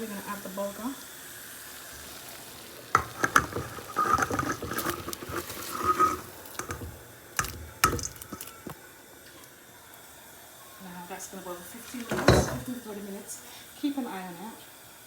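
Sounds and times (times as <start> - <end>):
boiling water gurgling and splashing: 0.0 - 8.9
knocks against pot: 5.8 - 8.8, 12.1 - 12.7.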